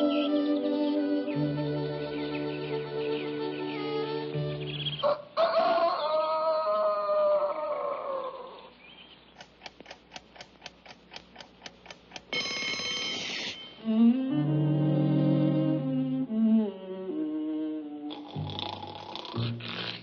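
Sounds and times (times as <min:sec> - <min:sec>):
clock ticking: 0:09.4 - 0:13.8
alarm clock bell ringing: 0:12.3 - 0:13.8.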